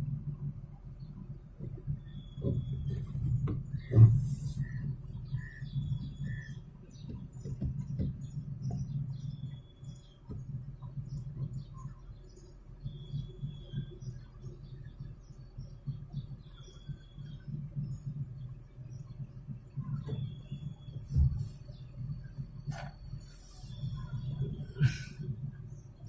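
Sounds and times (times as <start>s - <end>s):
washing machine humming and knocking: 0.0s - 26.0s.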